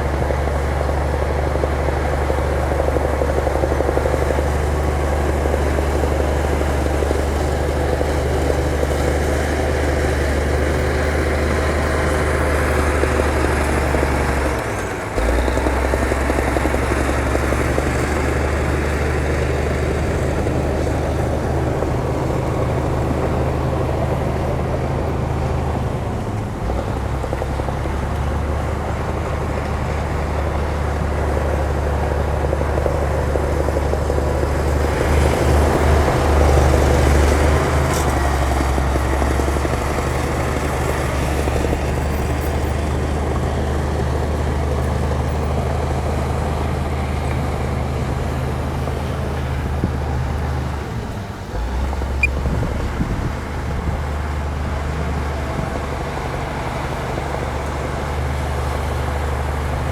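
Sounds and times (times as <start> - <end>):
heavy diesel engine running: 0.0 - 59.9.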